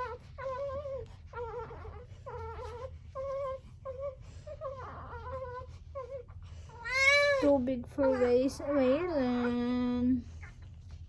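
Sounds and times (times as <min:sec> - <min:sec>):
newborn baby crying: 0:06.7 - 0:09.6.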